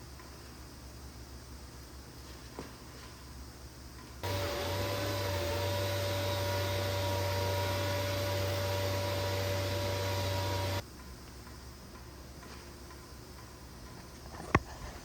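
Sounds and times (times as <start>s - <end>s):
small electric motor tool running: 4.2s - 10.8s.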